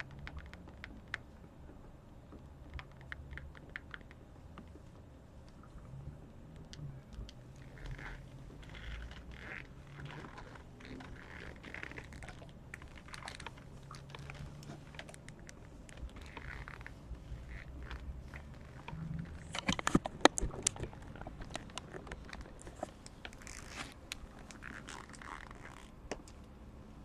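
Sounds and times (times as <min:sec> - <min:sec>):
long nails tapping and scratching: 0:00.0 - 0:26.6
soft scrapes and rustles: 0:07.4 - 0:26.0.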